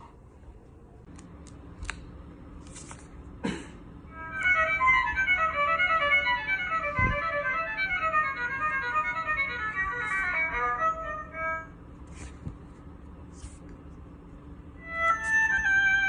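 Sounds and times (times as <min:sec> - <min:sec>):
quick violin tune from toy book: 0:04.2 - 0:11.7, 0:14.8 - 0:16.0.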